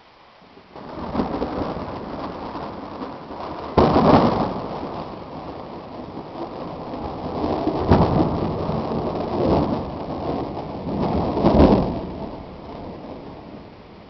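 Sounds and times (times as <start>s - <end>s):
rain hissing: 0.0s - 14.0s
rolling thunder: 0.8s - 14.0s.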